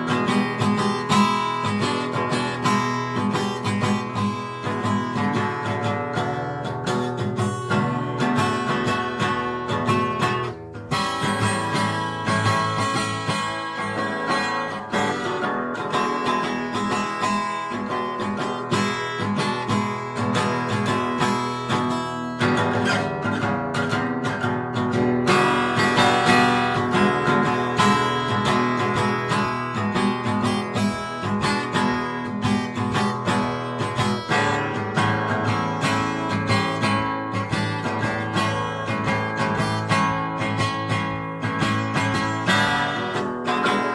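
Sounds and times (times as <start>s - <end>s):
acoustic guitar blues: 0.0s - 43.9s.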